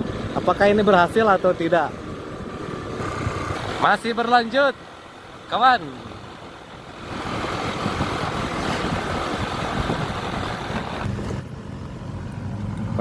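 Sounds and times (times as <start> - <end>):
wind rush: 0.0 - 1.1, 6.8 - 13.0
scooter engine running: 0.0 - 12.7.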